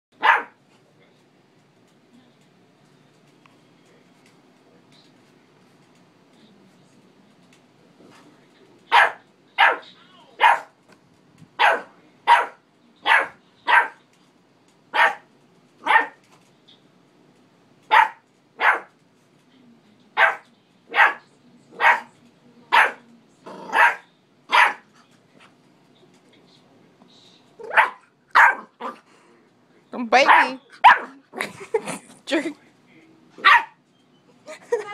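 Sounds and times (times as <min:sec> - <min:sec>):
dog barking: 0:00.2 - 0:00.6, 0:08.9 - 0:10.7, 0:11.6 - 0:14.0, 0:14.9 - 0:15.2, 0:15.8 - 0:16.2, 0:17.9 - 0:18.9, 0:20.2 - 0:21.2, 0:21.8 - 0:22.1, 0:22.7 - 0:23.0, 0:23.7 - 0:24.8, 0:27.6 - 0:29.0, 0:30.2 - 0:31.2, 0:33.4 - 0:33.8.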